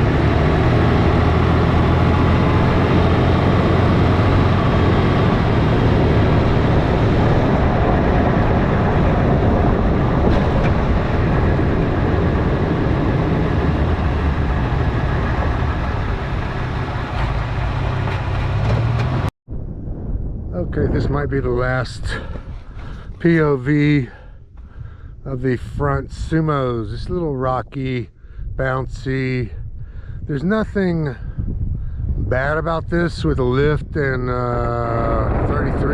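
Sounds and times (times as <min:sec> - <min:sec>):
car engine running: 0:00.0 - 0:19.3
tyre and suspension noise: 0:00.0 - 0:19.3, 0:22.2 - 0:23.3.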